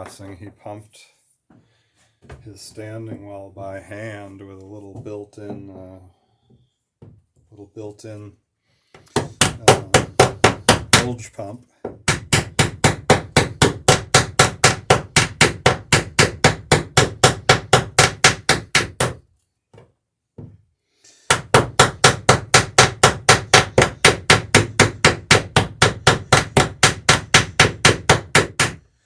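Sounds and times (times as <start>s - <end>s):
hammer banging rivets in wood: 9.0s - 11.1s, 11.9s - 19.2s, 21.3s - 28.8s.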